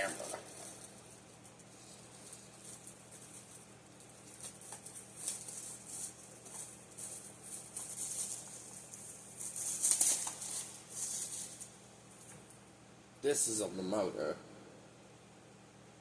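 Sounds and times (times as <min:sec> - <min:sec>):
plastic packaging crinkling: 0:00.0 - 0:12.4.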